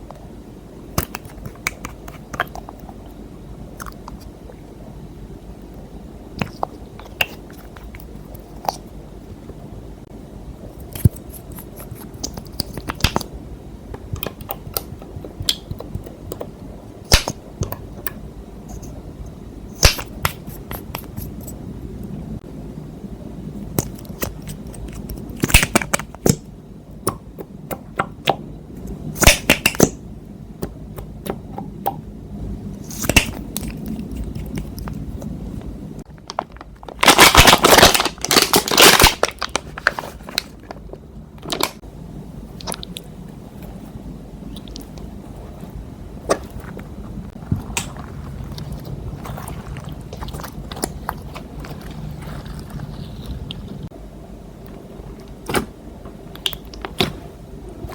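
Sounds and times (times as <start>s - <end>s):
slime crackling: 36.2s - 40.6s, 46.2s - 53.9s.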